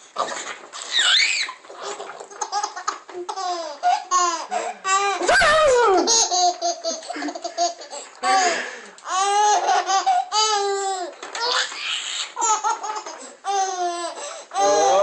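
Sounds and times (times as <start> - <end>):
baby squealing: 0.8 - 1.6, 3.9 - 6.1, 9.1 - 12.7
baby laughing: 1.0 - 15.0.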